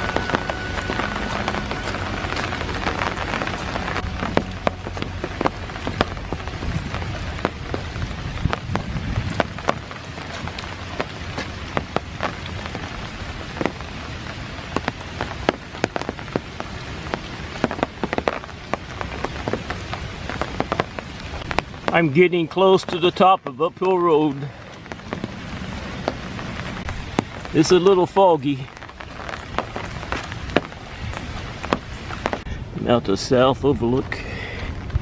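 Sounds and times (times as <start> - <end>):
steady rain falling: 0.0 - 35.0.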